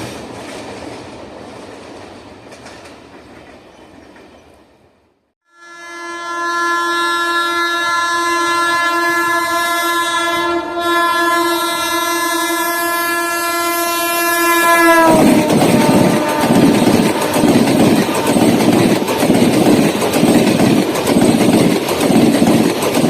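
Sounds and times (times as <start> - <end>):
passing train rushing and wheel noise: 0.0 - 5.3, 6.3 - 23.0
locomotive horn blast: 5.4 - 18.7.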